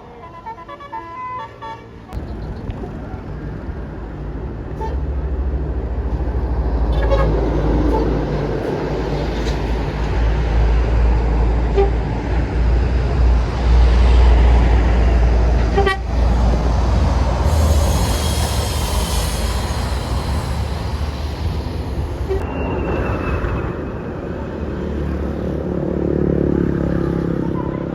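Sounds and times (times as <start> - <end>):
bus diesel engine rumble: 0.0 - 22.5
hiss: 16.9 - 22.4.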